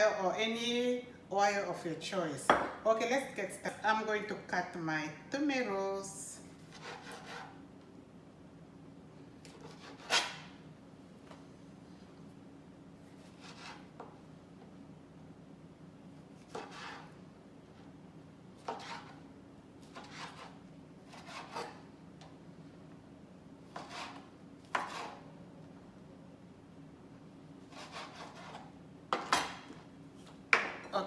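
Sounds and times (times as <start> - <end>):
knife slicing on cutting board: 6.7 - 7.6, 9.5 - 10.5, 13.2 - 14.0, 16.4 - 17.1, 18.6 - 19.2, 19.8 - 21.8, 23.7 - 25.2, 27.7 - 29.6.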